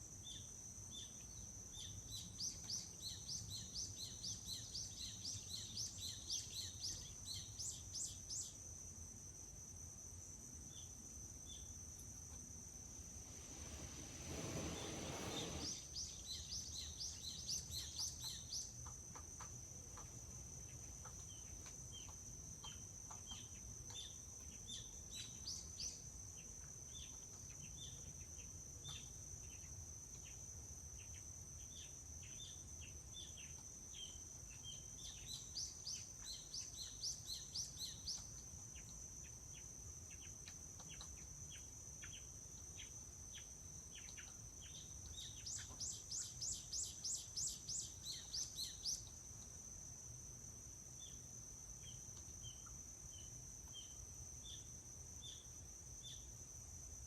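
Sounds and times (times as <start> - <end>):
soft low rumble: 12.7 - 15.8
small birds chirping: 13.0 - 26.0, 33.2 - 49.6.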